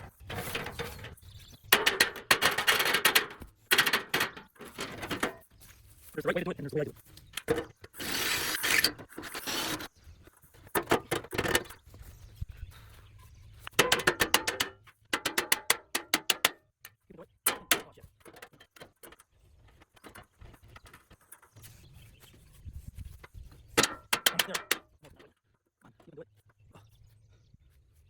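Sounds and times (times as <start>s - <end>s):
short scraping noises: 0.0s - 1.3s, 7.4s - 10.0s
metal parts clicking and clanking: 0.0s - 5.5s, 7.2s - 9.9s, 10.7s - 11.8s, 13.6s - 16.6s, 17.5s - 21.6s, 23.8s - 25.3s.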